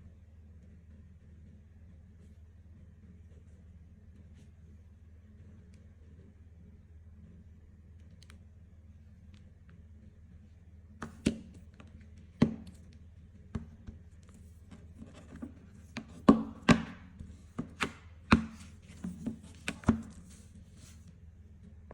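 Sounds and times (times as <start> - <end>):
low steady hum: 0.0 - 21.9
hard objects tapping and clicking: 11.0 - 12.9, 13.6 - 20.4.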